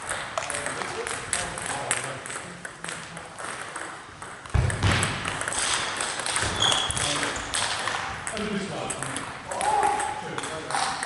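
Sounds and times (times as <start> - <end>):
table tennis ball knocks: 2.8 - 11.0.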